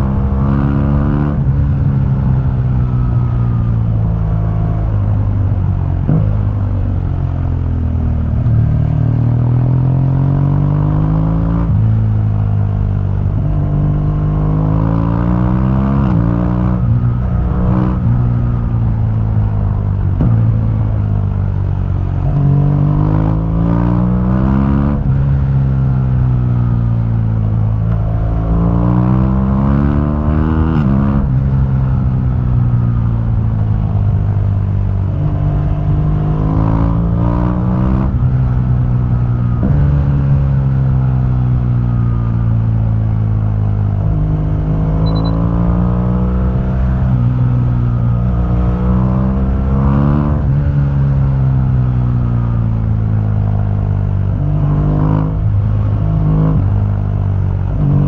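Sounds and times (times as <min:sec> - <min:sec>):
road rumble: 0:00.0 - 0:58.0
wind: 0:00.0 - 0:58.0
motorcycle engine accelerating: 0:44.8 - 0:45.6.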